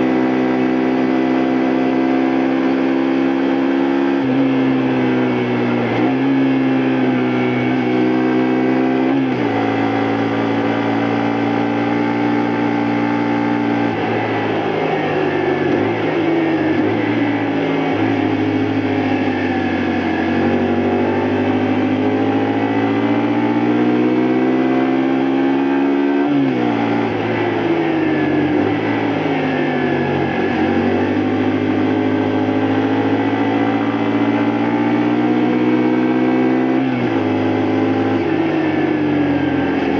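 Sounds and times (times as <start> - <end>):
motorcycle engine running: 0.0 - 25.2, 26.4 - 39.9.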